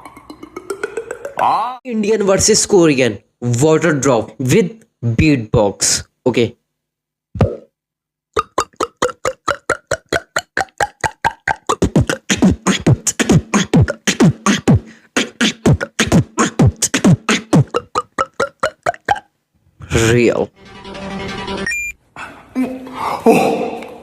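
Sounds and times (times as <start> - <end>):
beatboxed water-drop pops: 0.0 - 1.4, 7.4 - 7.7, 8.4 - 19.3
beatbox kick beats: 0.0 - 1.6, 8.4 - 19.3.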